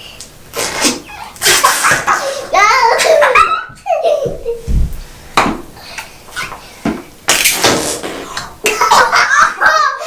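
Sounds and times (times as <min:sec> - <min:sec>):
children laughing: 0:01.1 - 0:04.7, 0:08.6 - 0:10.0.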